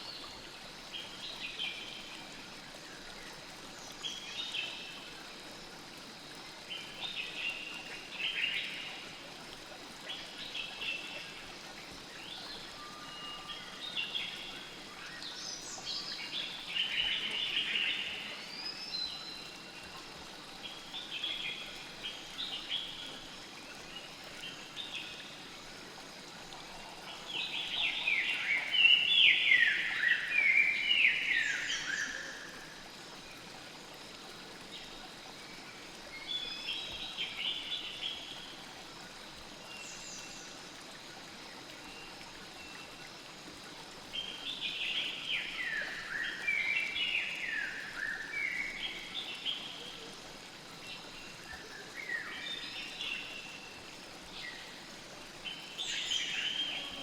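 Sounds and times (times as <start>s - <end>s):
river water flowing: 0.0s - 57.0s.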